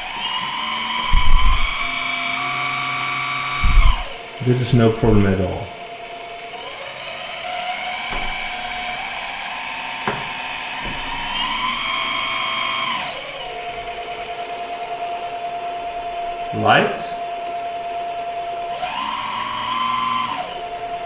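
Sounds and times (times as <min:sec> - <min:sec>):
hydraulic pump whining: 0:00.0 - 0:21.0
light knocks: 0:08.1 - 0:09.0.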